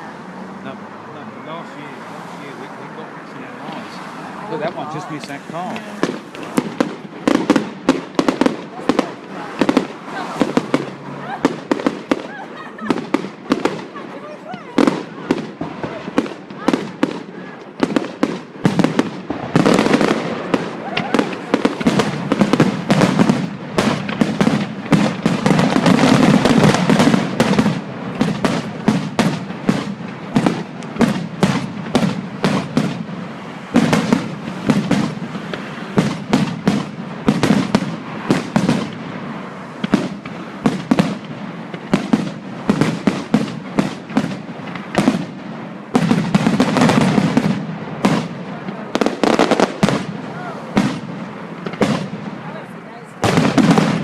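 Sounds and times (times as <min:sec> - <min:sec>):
fireworks crackling and banging: 0:00.0 - 0:54.0.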